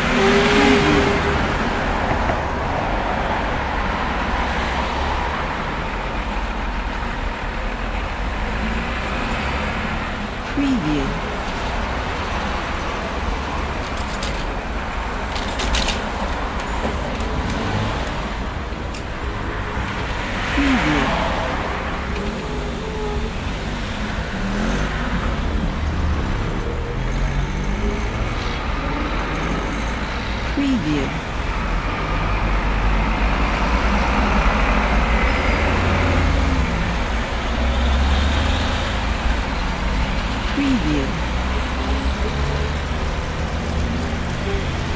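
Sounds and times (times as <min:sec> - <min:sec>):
road traffic rumble: 0:00.0 - 0:44.9
cars passing with tyre hiss: 0:31.2 - 0:44.9.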